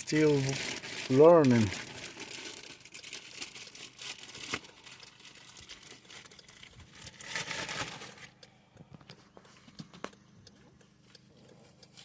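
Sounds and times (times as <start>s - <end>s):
bag rustling and crinkling: 0.0s - 8.3s.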